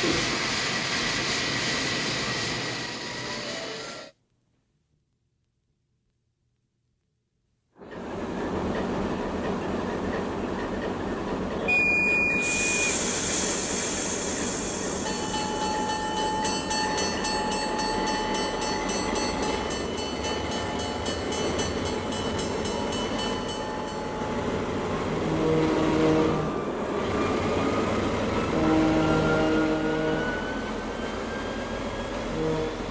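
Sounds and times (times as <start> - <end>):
high whistle tone: 11.7 - 17.0
air hiss: 12.4 - 16.0
locomotive bell ringing: 15.0 - 24.7
locomotive horn blast: 25.1 - 26.6, 28.4 - 30.6, 32.3 - 32.9.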